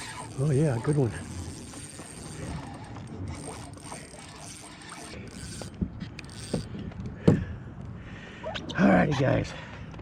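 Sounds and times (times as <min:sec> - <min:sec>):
fishing reel gears whirring: 0:00.0 - 0:06.7.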